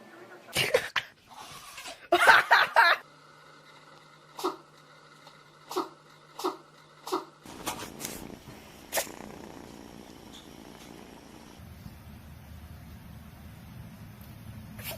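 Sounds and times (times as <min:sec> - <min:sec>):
steady low hum: 0:03.0 - 0:14.8
pet sneezing: 0:05.7 - 0:08.2.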